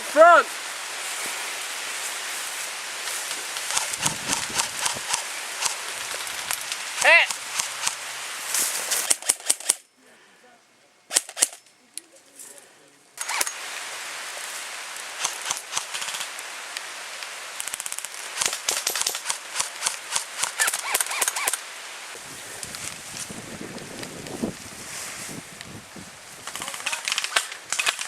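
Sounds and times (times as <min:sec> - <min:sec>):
airsoft guns firing: 0:17.7 - 0:21.6.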